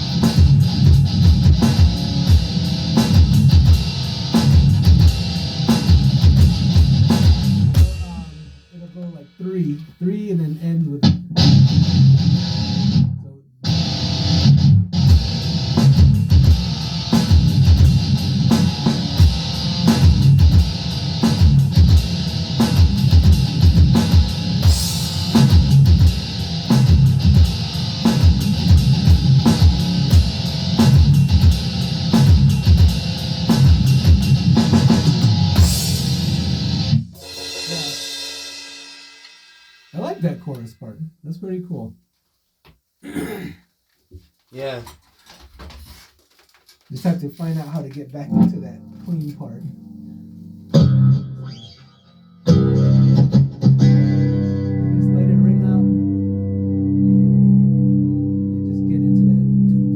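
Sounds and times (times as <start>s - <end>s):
electric guitar rock riff: 0.0s - 8.5s, 11.0s - 38.8s, 48.3s - 59.9s
drums: 0.0s - 40.7s, 42.6s - 49.4s, 52.5s - 55.8s.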